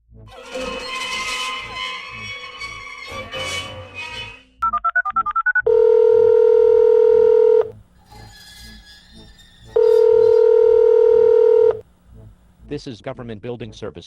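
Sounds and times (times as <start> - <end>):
telephone ringing tone: 5.7 - 7.7, 9.8 - 11.8.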